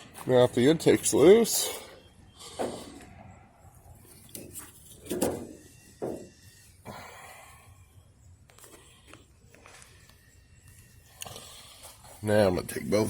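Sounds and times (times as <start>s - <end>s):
knocks and clunks of engine parts: 2.5s - 3.1s, 4.3s - 6.4s.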